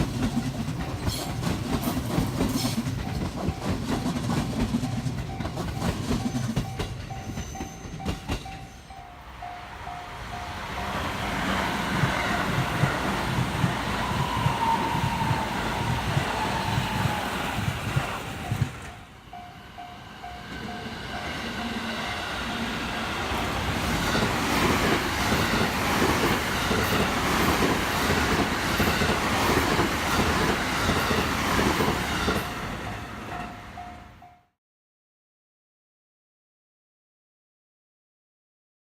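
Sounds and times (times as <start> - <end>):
train wheels clattering over rails: 0.0 - 8.9, 10.3 - 19.1, 22.5 - 32.7
level crossing warning bell: 0.0 - 13.4, 18.4 - 25.7, 32.2 - 34.5.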